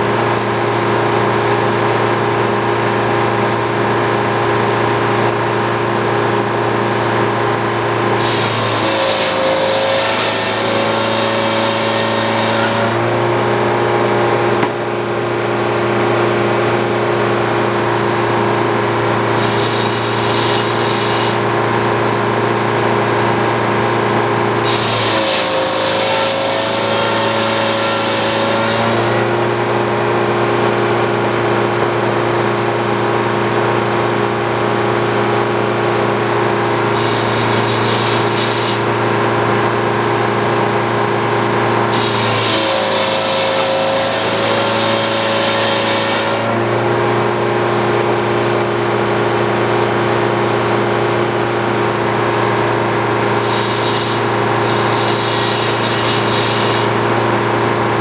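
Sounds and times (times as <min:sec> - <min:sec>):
sawmill running: 0:00.0 - 0:58.0
circular blade sawing log: 0:06.4 - 0:13.7, 0:17.8 - 0:29.6, 0:36.0 - 0:46.8, 0:52.2 - 0:58.0.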